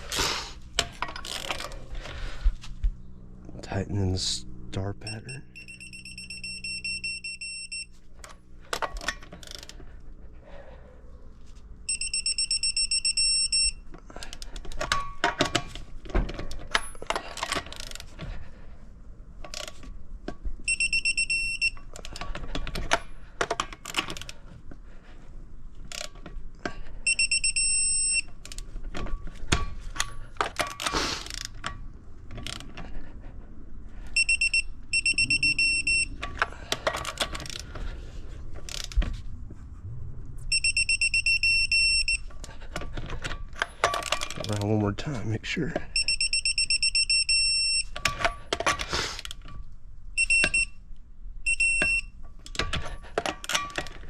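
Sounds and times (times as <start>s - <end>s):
high electronic beep: 5.0s - 7.9s, 34.2s - 36.2s, 40.5s - 42.2s
wrench tightening lug nuts: 8.2s - 9.8s, 29.4s - 32.9s.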